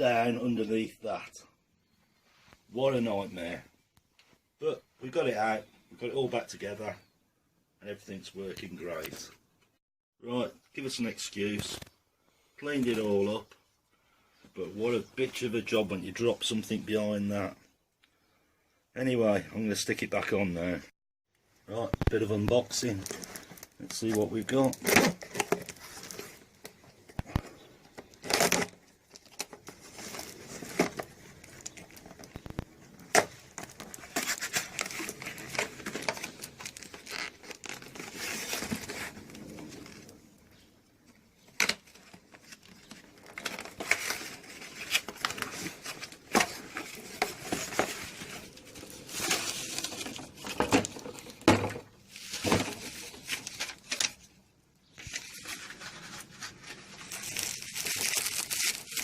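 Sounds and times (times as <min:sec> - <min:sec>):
sharp clicks and crackles: 0:21.9 - 0:40.2
packaging tearing and crumpling: 0:22.6 - 0:27.4, 0:28.1 - 0:40.1, 0:41.6 - 0:51.4, 0:55.0 - 0:59.0.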